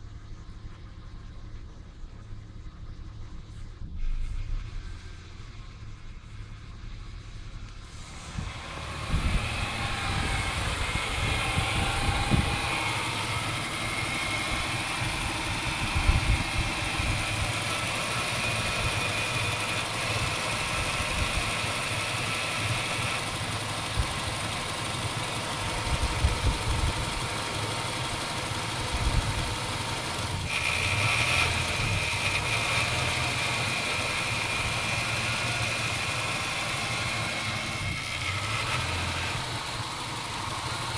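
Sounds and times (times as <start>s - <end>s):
car engine idling: 0.0s - 40.9s
uneven low engine thuds: 0.0s - 40.9s.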